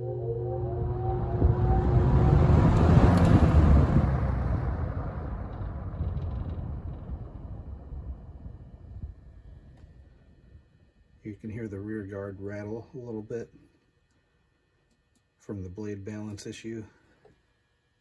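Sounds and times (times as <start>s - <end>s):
box fan motor hum: 0.0s - 10.5s.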